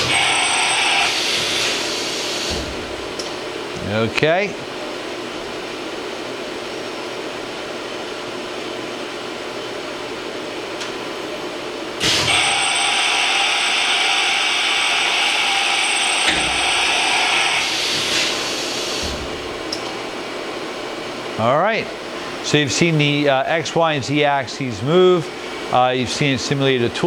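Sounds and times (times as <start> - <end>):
rushing machine noise with whistle: 0.0 - 2.6, 12.0 - 19.3
machine low hum: 0.0 - 27.0.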